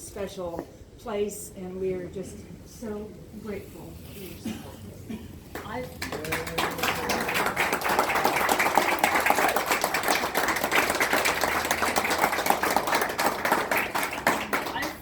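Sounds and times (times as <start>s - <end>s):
audience applauding: 5.6s - 15.0s.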